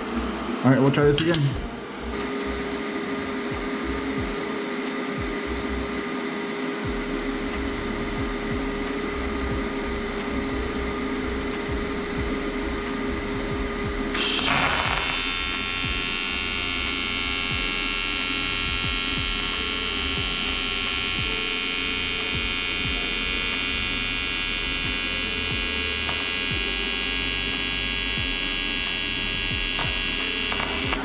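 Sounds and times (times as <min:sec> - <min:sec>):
welding arc buzzing: 0:06.8 - 0:31.0.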